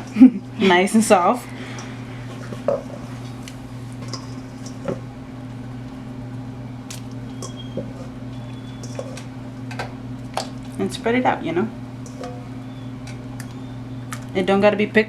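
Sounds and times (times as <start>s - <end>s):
steady low hum: 0.0s - 15.0s
potato chunks plopping into water: 10.2s - 10.9s, 13.1s - 14.4s.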